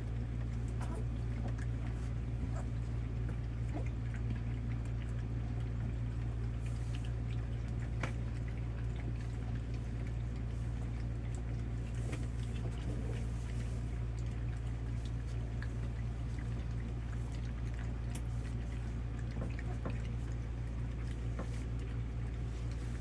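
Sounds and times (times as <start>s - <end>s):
puppies lapping and slurping: 0.0s - 23.0s
small wet clicks and smacks: 0.0s - 23.0s
steady low hum: 0.0s - 23.0s.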